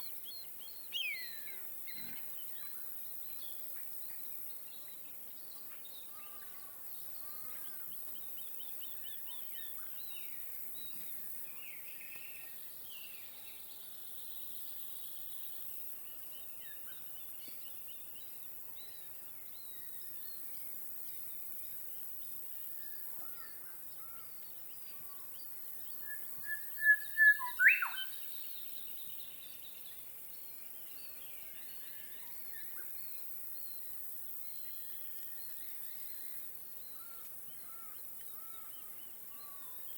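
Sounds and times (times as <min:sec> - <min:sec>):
small birds chirping: 0:23.2 - 0:30.1.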